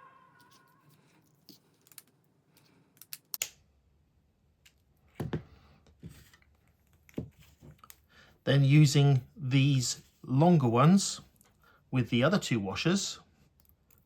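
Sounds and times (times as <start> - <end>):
small parts clicking and tapping: 1.2 - 3.6.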